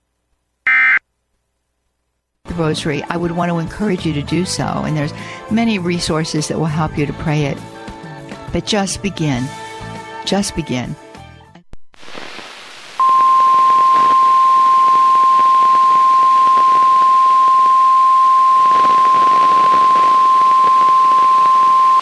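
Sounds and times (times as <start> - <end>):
faint hiss: 12.0 - 22.0
steady warning alarm tone: 13.0 - 22.0.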